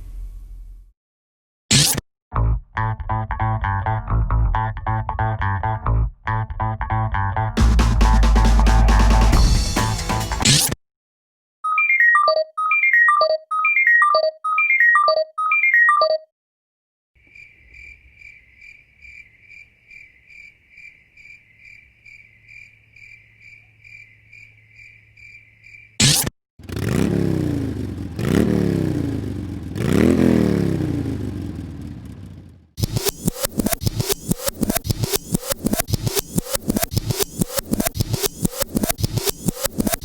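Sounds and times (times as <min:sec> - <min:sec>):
electronic music: 0:07.6 - 0:10.7, 0:32.8 - 0:40.0
pulsing high tone: 0:32.8 - 0:40.0.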